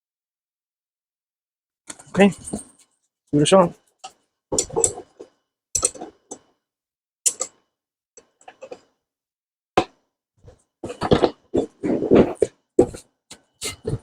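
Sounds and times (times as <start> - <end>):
metal parts clicking and knocking: 4.0 - 6.5, 7.2 - 8.9.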